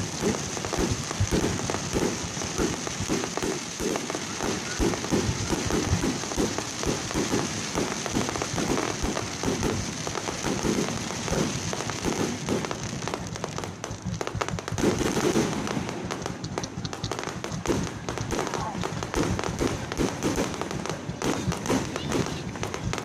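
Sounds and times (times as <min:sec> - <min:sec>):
fireworks crackling and popping: 0:00.0 - 0:23.0.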